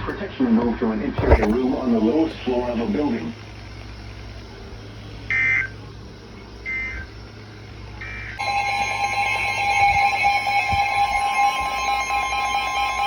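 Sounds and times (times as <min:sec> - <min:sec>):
screechy data bursts: 0:01.2 - 0:13.0
steady two-tone attention signal: 0:07.9 - 0:13.0.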